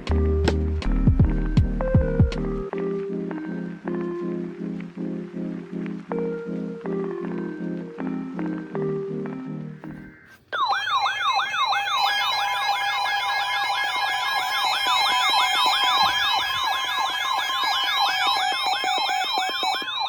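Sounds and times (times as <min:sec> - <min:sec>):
steady beeping tones: 0:09.9 - 0:20.0
siren-like alert wails: 0:10.5 - 0:20.0.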